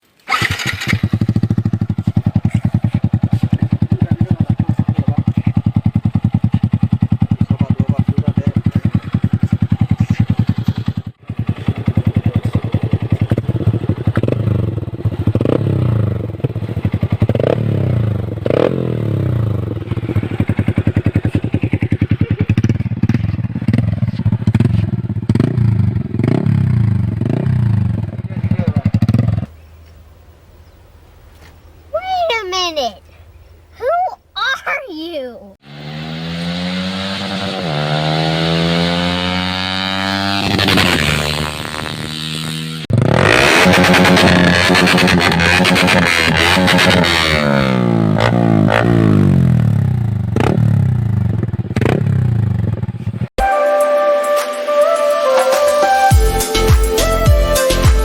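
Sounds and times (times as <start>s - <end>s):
motorcycle engine idling and revving: 0.0s - 30.0s, 35.5s - 53.4s.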